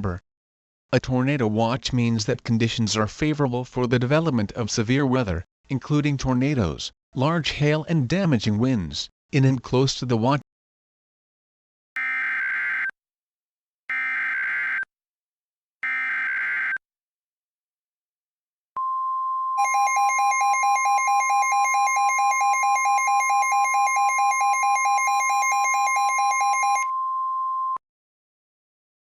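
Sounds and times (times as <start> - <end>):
steady attention tone: 18.8 - 27.2
rapidly pulsing beep: 19.6 - 26.9.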